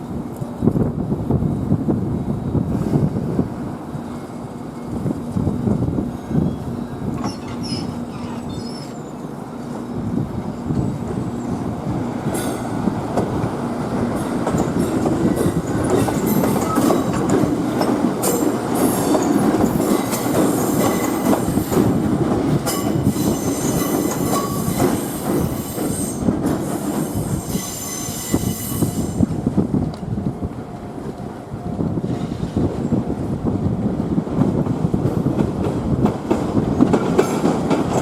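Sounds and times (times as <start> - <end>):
electric train rumbling past: 0.0 - 38.0
steel wheels squealing: 6.3 - 9.4, 23.0 - 29.3.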